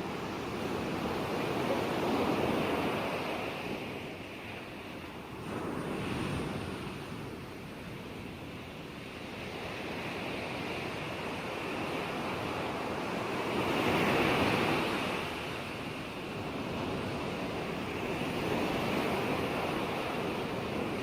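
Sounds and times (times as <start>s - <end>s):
ocean waves on shore: 0.0s - 21.0s.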